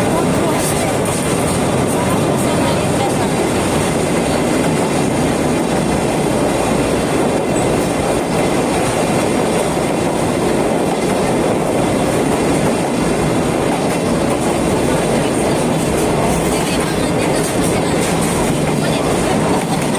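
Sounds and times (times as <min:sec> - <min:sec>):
train clatter: 0:00.0 - 0:19.9
train wheels rumbling on track: 0:00.0 - 0:19.9.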